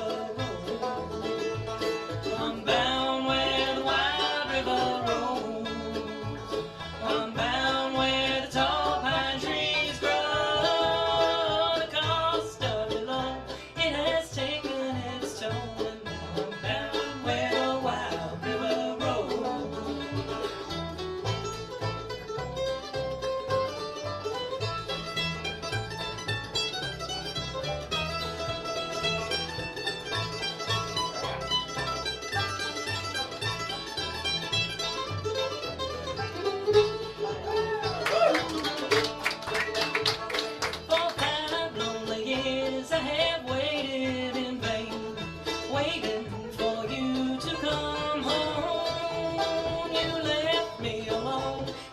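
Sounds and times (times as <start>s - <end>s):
bluegrass band playing: 0.0s - 51.9s
person singing: 2.2s - 6.4s, 7.0s - 20.1s, 40.9s - 51.9s.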